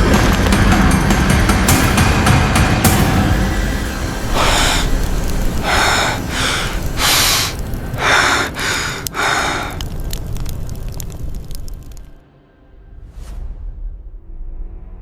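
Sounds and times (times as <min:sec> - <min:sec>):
person gasping breaths: 0:04.3 - 0:10.2.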